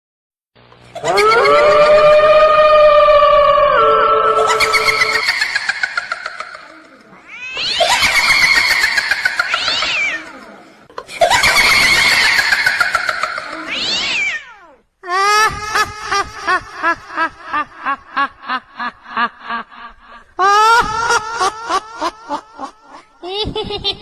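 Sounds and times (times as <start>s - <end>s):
harsh shrieks with falling pitch: 1.0s - 5.7s
high cackling cries: 1.0s - 10.6s, 11.3s - 15.9s.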